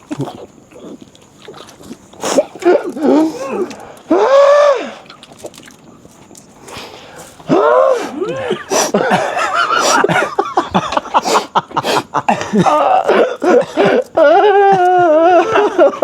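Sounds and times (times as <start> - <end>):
person laughing: 8.1 - 16.0
person coughing: 12.3 - 14.1.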